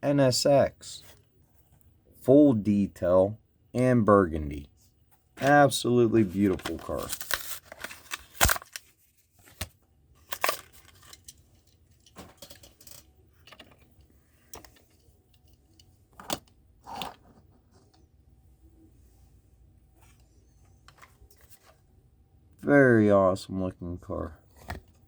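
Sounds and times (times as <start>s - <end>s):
plastic packaging crinkling: 6.2s - 9.6s.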